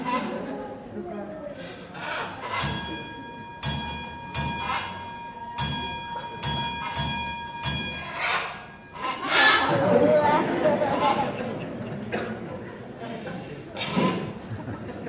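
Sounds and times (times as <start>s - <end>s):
small bell ringing: 2.6s - 9.6s.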